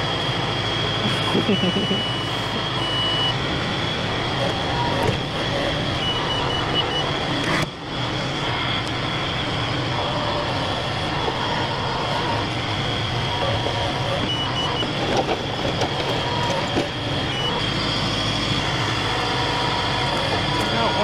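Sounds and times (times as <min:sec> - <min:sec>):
loader engine running: 0:00.0 - 0:21.0
high warning beeps: 0:01.0 - 0:03.5, 0:04.3 - 0:07.6, 0:10.7 - 0:19.3.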